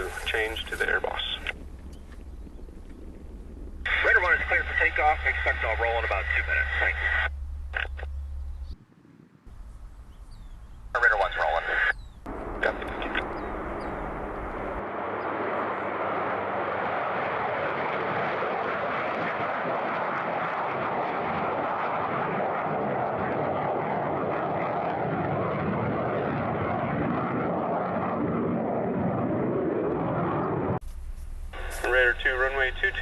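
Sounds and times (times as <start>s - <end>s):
jet engine roaring: 0.0s - 1.8s, 3.0s - 8.1s, 11.0s - 30.8s.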